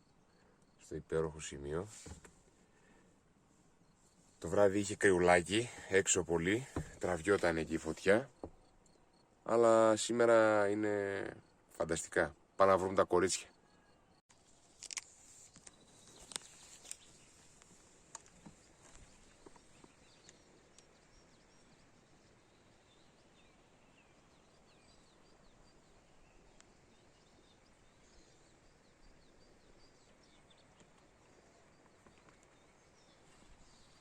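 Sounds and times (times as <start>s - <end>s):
faint bird chirps: 0.0s - 14.2s, 15.2s - 34.0s.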